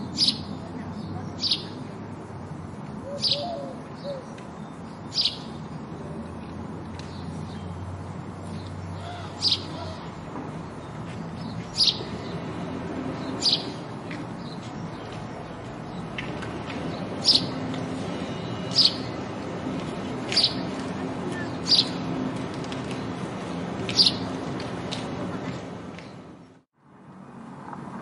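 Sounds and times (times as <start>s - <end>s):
sparrow chirping: 0.0s - 1.9s, 3.0s - 6.0s, 7.0s - 22.2s, 23.9s - 24.4s.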